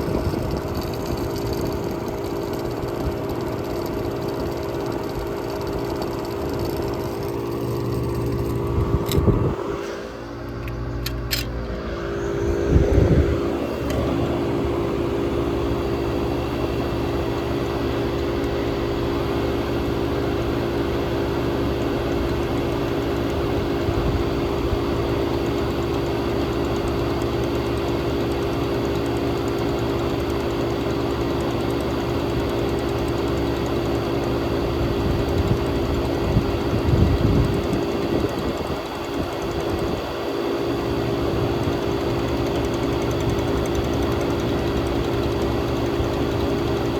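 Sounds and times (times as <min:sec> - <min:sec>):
air conditioner compressor humming: 0:00.0 - 0:46.9.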